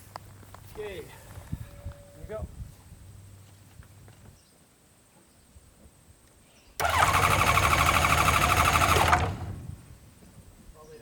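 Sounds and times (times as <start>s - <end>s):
aircraft piston engine turning over: 6.8s - 9.8s.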